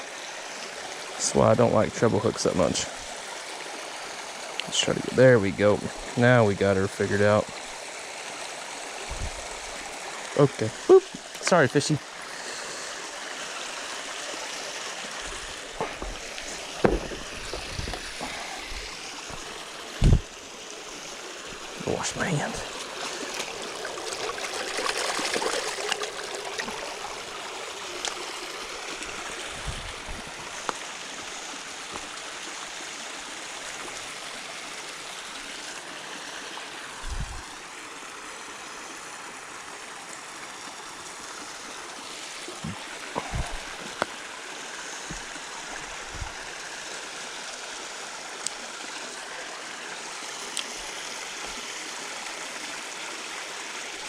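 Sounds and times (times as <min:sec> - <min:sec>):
creek flowing: 0:00.0 - 0:54.0
dull low thumps: 0:09.1 - 0:09.4, 0:15.3 - 0:20.3.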